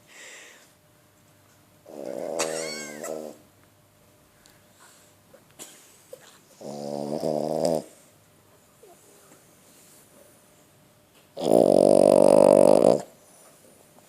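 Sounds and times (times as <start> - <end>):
dog snoring: 1.8 - 3.4, 6.6 - 8.0, 11.4 - 13.2.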